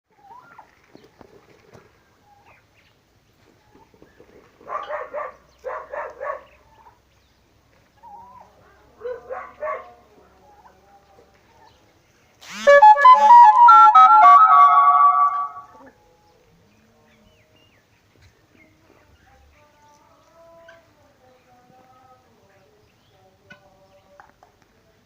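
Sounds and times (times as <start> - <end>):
loud music: 12.6 - 15.7.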